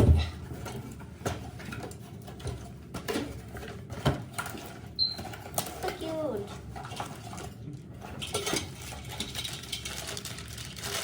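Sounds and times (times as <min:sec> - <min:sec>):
packaging rustling: 0:08.8 - 0:11.0.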